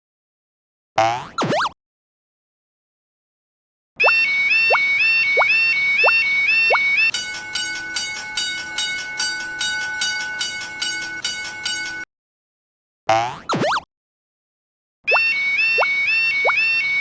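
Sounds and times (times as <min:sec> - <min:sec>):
warbling cartoon sound effect: 0:01.0 - 0:01.8, 0:13.1 - 0:13.9
steady held tones: 0:04.6 - 0:12.0
railroad crossing bell clanging: 0:07.0 - 0:12.1.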